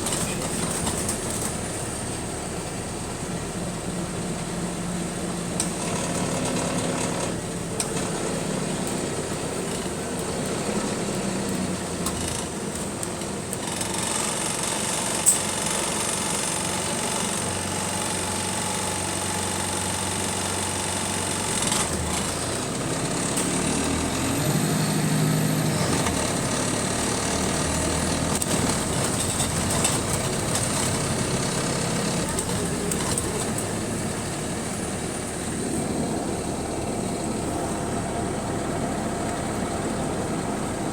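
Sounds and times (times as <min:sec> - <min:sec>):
bus engine running: 0:00.0 - 0:40.9
rattles and clicks: 0:26.0 - 0:33.8.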